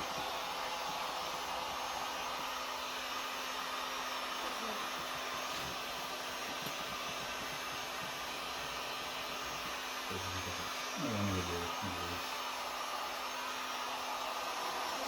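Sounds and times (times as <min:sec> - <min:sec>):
heat gun blowing and humming: 0:00.0 - 0:15.0.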